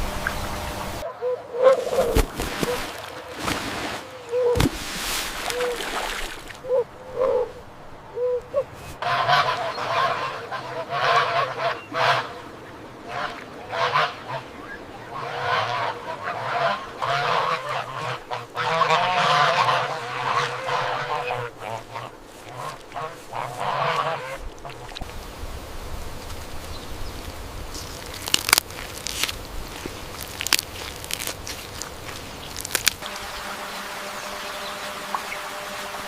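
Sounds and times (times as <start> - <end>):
waterfowl honking: 0.2 - 2.9, 8.2 - 25.0, 33.0 - 36.0.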